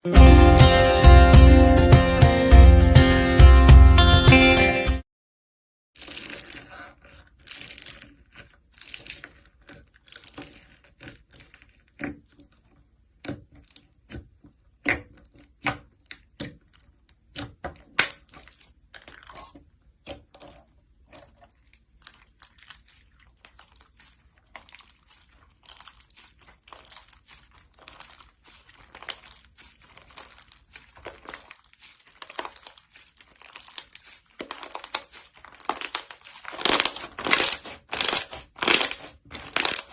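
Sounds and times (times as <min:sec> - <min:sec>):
slime crackling and popping: 0:06.0 - 0:39.9.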